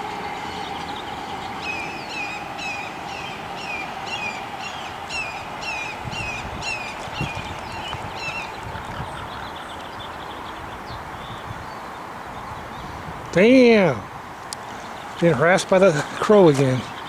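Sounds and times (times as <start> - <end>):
bird calling high short calls: 0.0 - 9.8.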